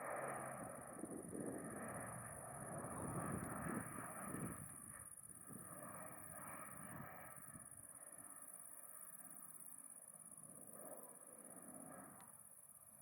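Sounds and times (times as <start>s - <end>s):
distant turboprop aircraft rumble: 0.0s - 13.0s.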